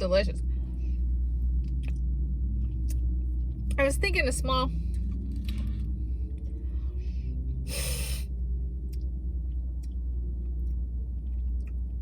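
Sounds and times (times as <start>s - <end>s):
low rumble inside car: 0.0s - 12.0s
short sharp breath: 6.8s - 8.3s.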